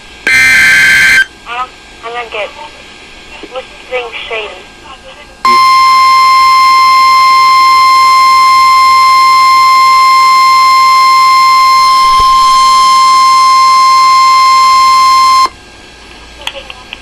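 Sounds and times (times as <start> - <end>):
steady alert tone: 11.6 - 15.5.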